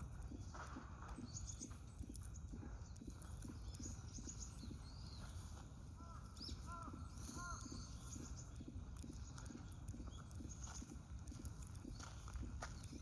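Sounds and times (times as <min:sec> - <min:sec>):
high thin bird calls: 0:02.8 - 0:10.9.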